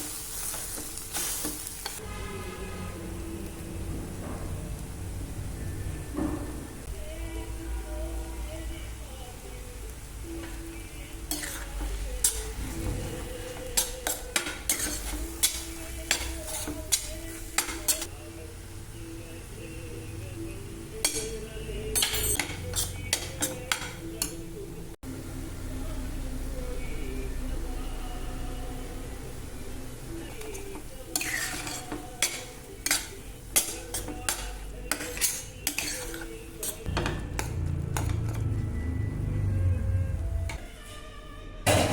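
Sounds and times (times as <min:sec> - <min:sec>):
food sizzling: 0:00.0 - 0:40.4
low background music: 0:00.0 - 0:41.9
spoon clinking against pan: 0:11.3 - 0:12.6, 0:13.5 - 0:18.1, 0:21.0 - 0:24.4, 0:30.4 - 0:38.4.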